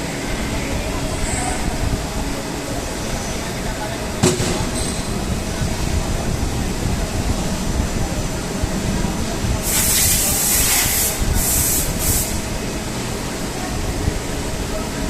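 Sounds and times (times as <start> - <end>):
loud spraying hiss: 9.6 - 12.6.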